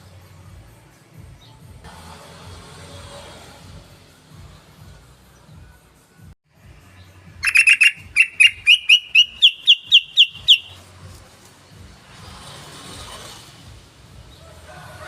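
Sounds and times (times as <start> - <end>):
bulbul chattering: 7.4 - 10.8.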